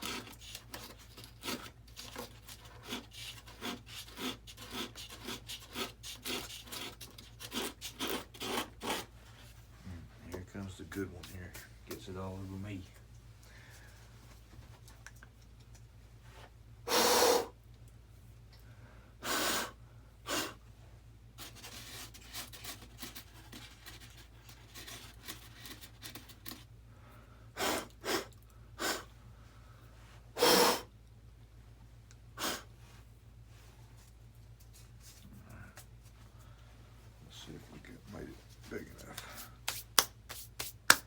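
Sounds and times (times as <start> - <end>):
scraping of foam carving: 0.0 - 9.1, 21.4 - 26.6
puffs of breath blowing: 16.9 - 17.6, 18.6 - 20.6, 26.9 - 30.9, 32.4 - 32.8.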